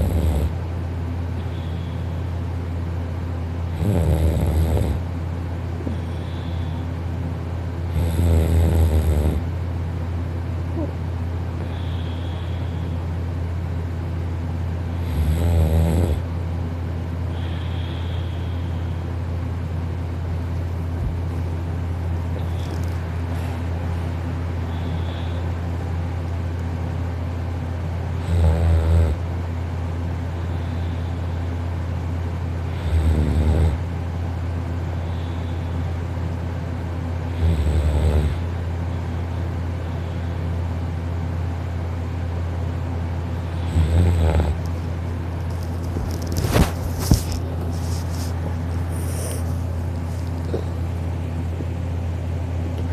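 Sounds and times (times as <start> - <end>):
person snoring: 0.0 - 0.6, 3.8 - 5.0, 7.9 - 9.4, 15.0 - 16.2, 43.5 - 44.6
steady low hum: 0.0 - 52.9.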